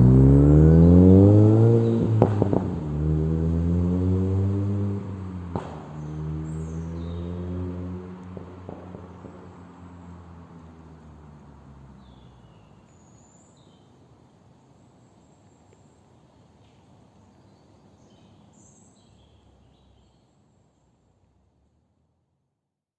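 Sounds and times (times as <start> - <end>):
car exhaust rumble: 0.0 - 13.0
faint outdoor background hiss: 0.0 - 22.8
bird chirps: 6.0 - 7.4, 14.9 - 21.0.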